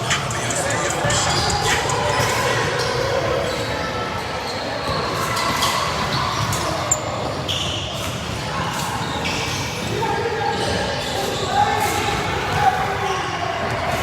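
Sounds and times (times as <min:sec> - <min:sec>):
shoe squeaks: 0:00.0 - 0:09.9
murmur of players and spectators: 0:00.0 - 0:14.0.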